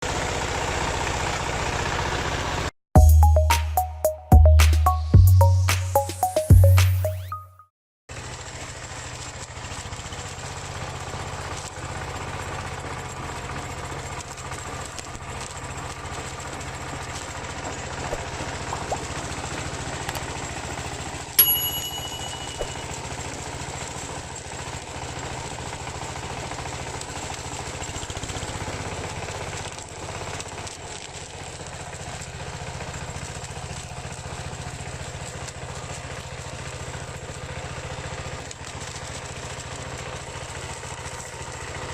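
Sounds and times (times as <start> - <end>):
diesel engine running: 0.0 - 2.7, 8.2 - 21.4.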